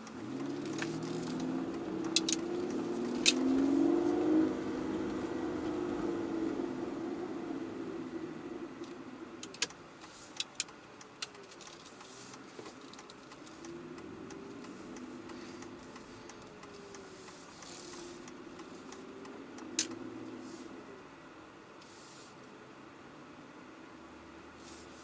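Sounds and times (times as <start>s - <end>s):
sharp clicks: 0.0s - 3.5s, 8.8s - 20.0s
car engine from inside cabin: 0.0s - 25.0s.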